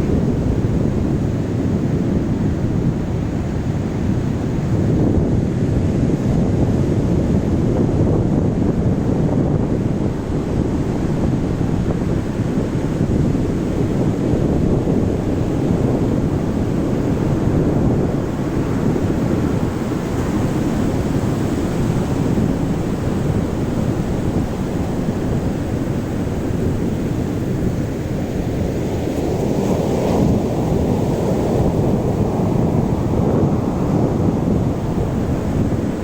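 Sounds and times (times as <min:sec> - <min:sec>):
wind buffeting microphone: 0:00.0 - 0:36.0
sea waves on shore: 0:08.4 - 0:36.0.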